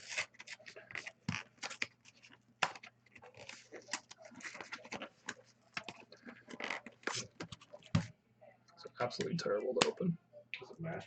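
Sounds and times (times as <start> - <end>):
packaging crinkling and scraping: 0.0 - 7.8.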